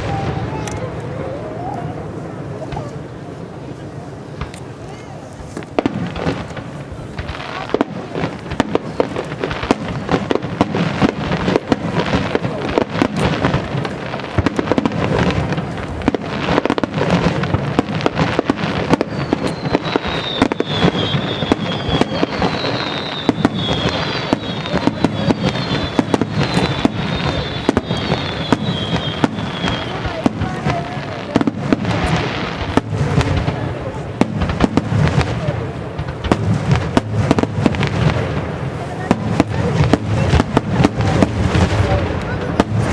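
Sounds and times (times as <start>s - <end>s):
fireworks bangs and booms: 0.0s - 42.9s
falling firework whistles: 18.5s - 30.4s.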